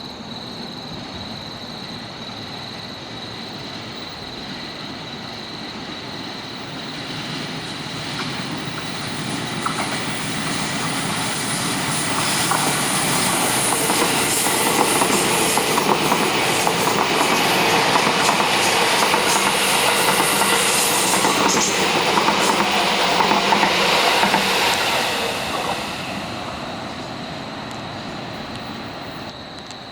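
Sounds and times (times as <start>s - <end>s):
electric train running: 4.9s - 29.3s
wheels clicking over rail joints: 8.0s - 26.6s.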